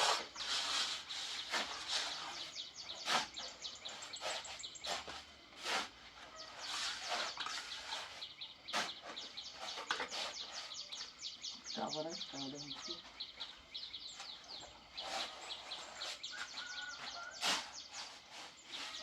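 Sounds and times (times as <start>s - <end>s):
small birds chirping: 0.0s - 19.0s
knock or scrape: 15.0s - 19.0s.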